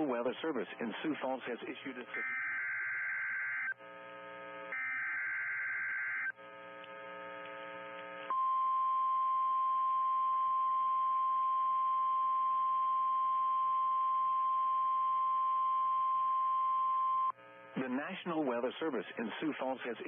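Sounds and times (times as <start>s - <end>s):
steady high alarm tone: 1.9s - 6.4s
low buzzing hum: 1.9s - 17.9s.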